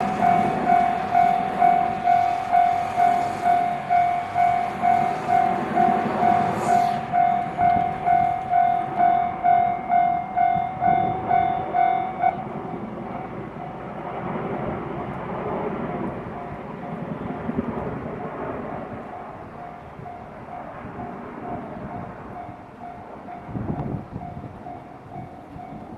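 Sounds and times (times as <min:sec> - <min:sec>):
level crossing warning bell: 0:00.0 - 0:13.8, 0:19.0 - 0:25.9
train running rumble: 0:00.0 - 0:25.9.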